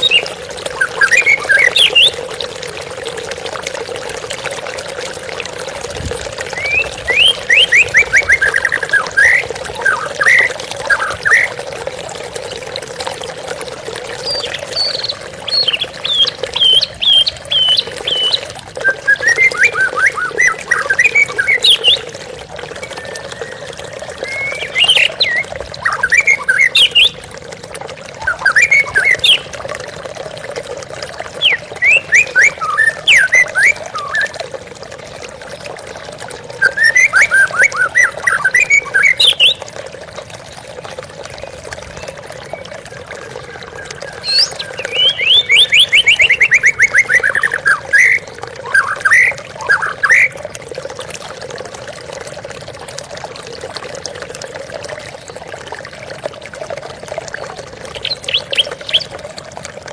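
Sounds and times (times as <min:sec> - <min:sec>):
flowing water: 0:00.0 - 0:59.9
bird singing whistled trills: 0:14.3 - 0:22.0, 0:22.8 - 0:27.2, 0:31.4 - 0:34.3, 0:44.1 - 0:50.3.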